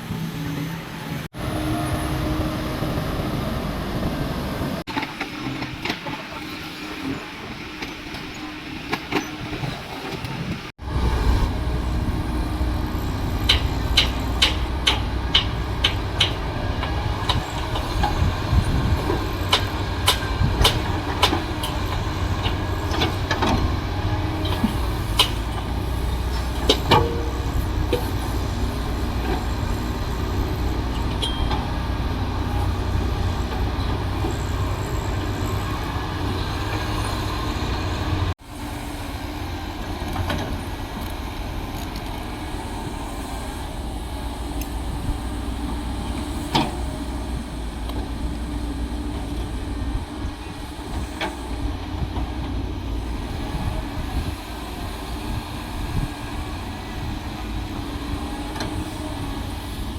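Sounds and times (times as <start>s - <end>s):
construction machinery engine rumble: 0.0s - 59.9s
sharp metal clanks: 31.2s - 31.6s.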